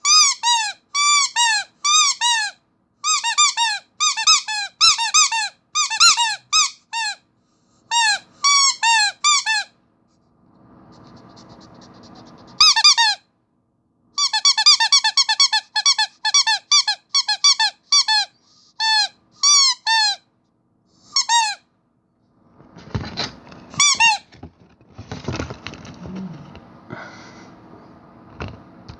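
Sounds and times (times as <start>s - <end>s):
squeaky rubber toy squeaks: 0.0s - 7.3s, 7.9s - 9.8s, 11.2s - 13.2s, 14.2s - 20.3s, 21.1s - 21.7s, 23.7s - 24.3s
rough rubbing scraping: 22.6s - 26.8s.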